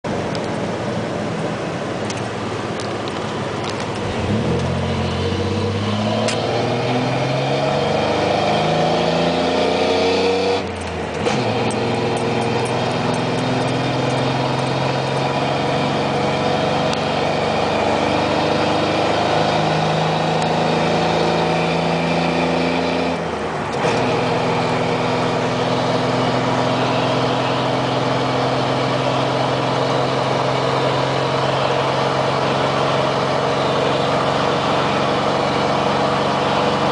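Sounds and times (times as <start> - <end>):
truck engine accelerating: 0.0 - 36.9.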